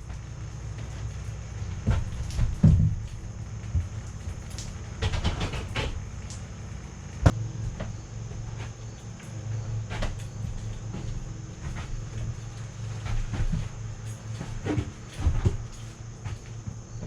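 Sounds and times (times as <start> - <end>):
knocks and thumps: 1.7 - 6.4, 9.8 - 17.0.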